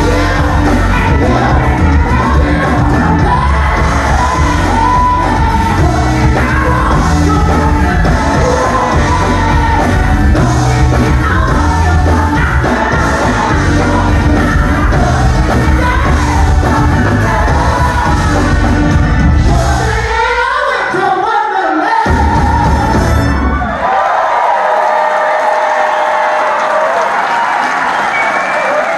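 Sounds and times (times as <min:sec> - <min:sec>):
steady bass line: 0:00.0 - 0:20.2, 0:22.1 - 0:23.8
lead singer singing: 0:00.0 - 0:23.7
live band playing: 0:00.0 - 0:24.0.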